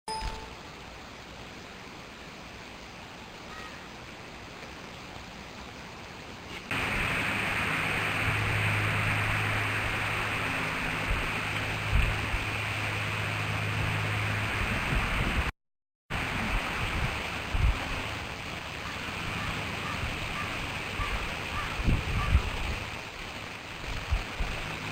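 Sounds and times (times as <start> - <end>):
low hum: 6.7 - 15.5
rushing wind noise: 6.7 - 15.5, 16.1 - 18.2, 19.0 - 23.0, 23.8 - 24.9.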